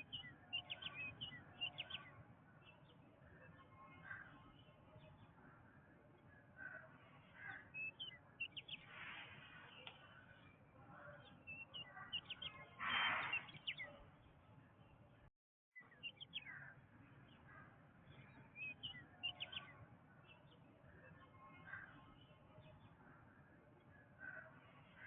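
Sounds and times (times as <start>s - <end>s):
birds chirping: 0.0s - 15.0s, 15.8s - 23.2s
harsh bird call: 12.2s - 13.9s.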